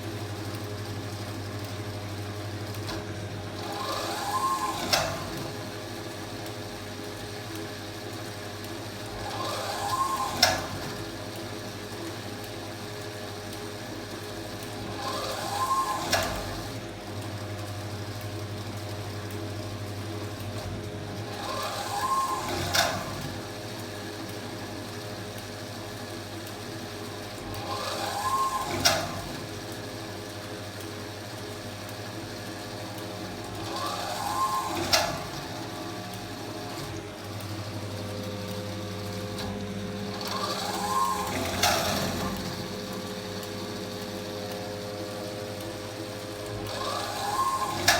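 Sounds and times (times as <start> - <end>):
washing machine motor whirring: 0.0 - 47.9.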